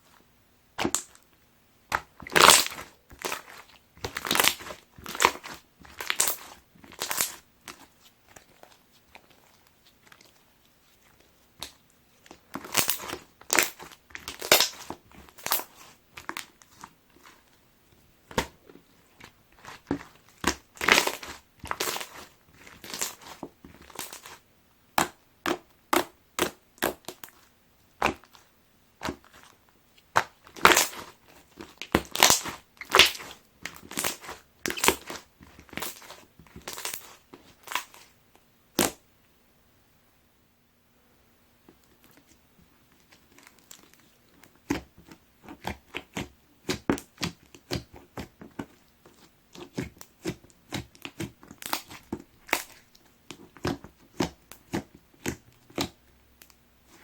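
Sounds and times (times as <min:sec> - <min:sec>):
slime crackling pops: 0:12.6 - 0:15.7, 0:31.8 - 0:38.0.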